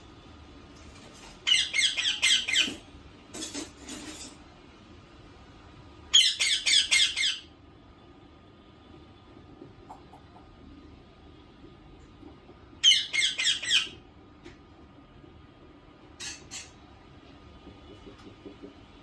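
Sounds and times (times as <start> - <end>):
parakeet squawking: 1.4 - 2.8, 6.1 - 7.5, 12.8 - 14.0.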